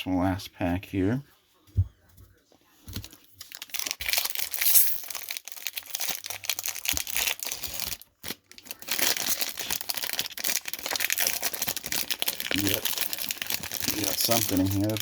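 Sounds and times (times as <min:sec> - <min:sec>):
foil wrapper crinkling and tearing: 0:03.0 - 0:15.0.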